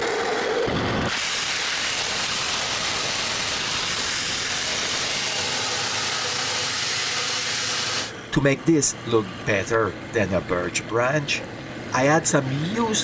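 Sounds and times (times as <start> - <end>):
lathe tool shaving wood: 0.0 - 10.3.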